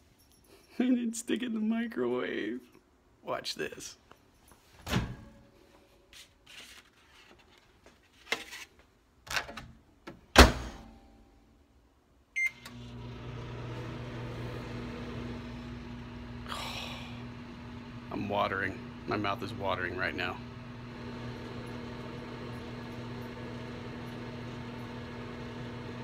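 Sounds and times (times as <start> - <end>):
microwave humming: 12.4 - 26.0.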